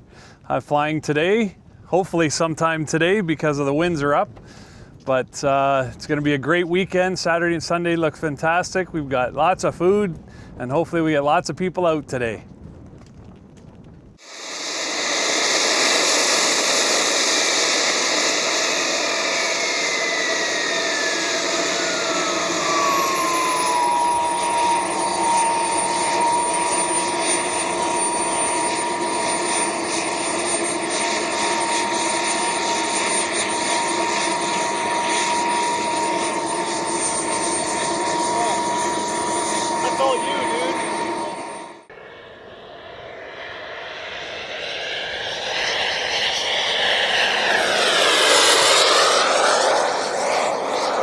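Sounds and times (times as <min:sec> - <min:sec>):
model jet engine whine: 0:14.2 - 0:51.0.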